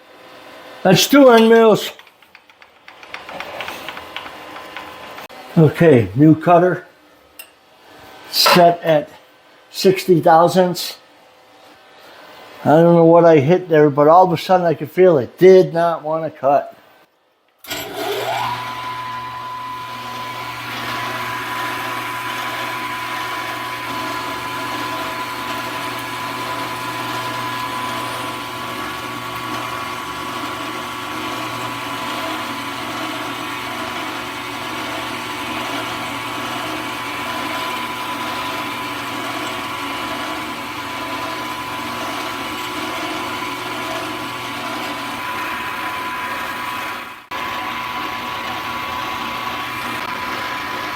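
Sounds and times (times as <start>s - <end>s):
milling machine spindle whining: 17.7s - 50.9s.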